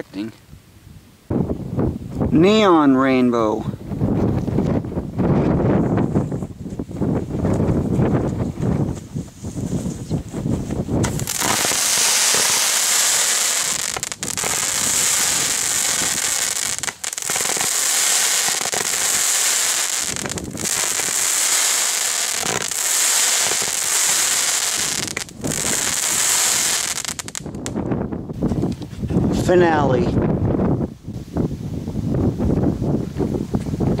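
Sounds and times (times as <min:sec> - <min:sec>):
firework crackling hiss: 0:11.0 - 0:27.8.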